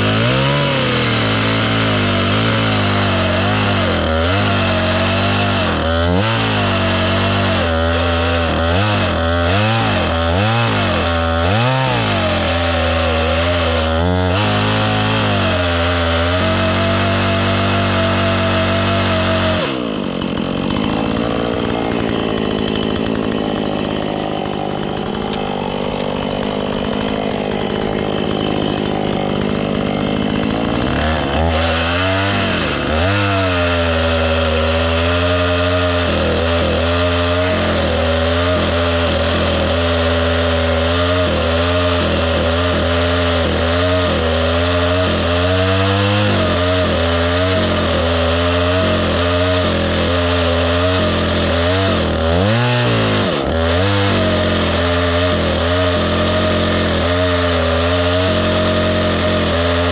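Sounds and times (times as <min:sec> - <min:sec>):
chainsaw engine revving: 0:00.0 - 0:59.9.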